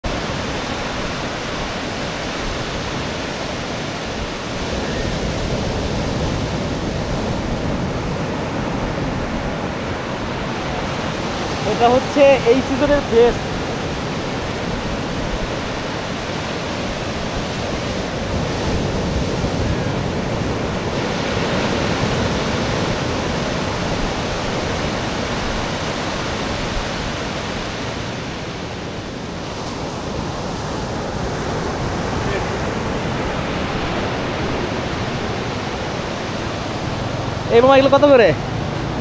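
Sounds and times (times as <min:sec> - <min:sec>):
waves washing onto beach: 0:00.0 - 0:39.0.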